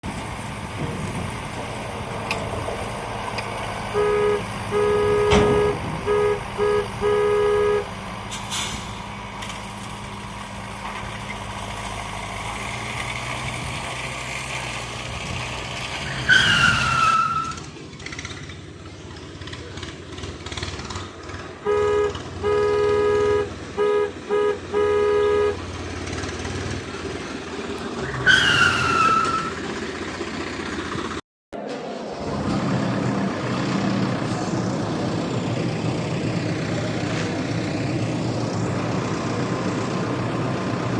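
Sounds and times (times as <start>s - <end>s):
horn honking short toots: 3.9s - 8.8s, 21.6s - 25.7s.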